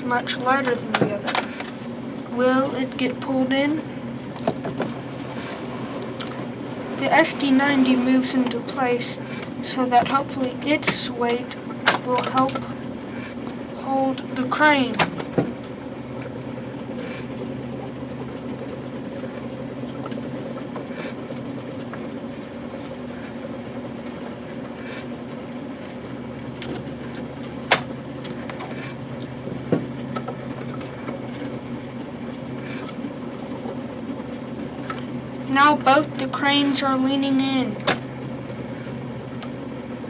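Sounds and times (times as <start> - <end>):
model train motor hum: 4.8 - 15.0.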